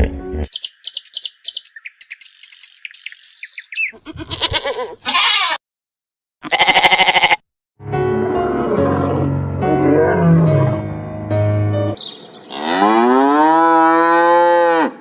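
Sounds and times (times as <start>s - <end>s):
high rapid animal chirps: 0.5s - 5.5s
pitched animal calls: 3.7s - 5.6s, 6.4s - 7.4s.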